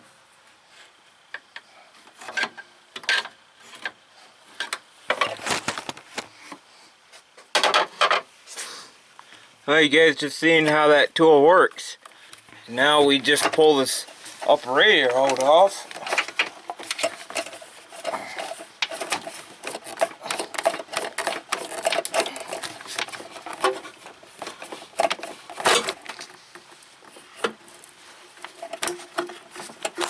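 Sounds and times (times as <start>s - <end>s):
rubber hose twisted off by hand: 13.3s - 30.0s.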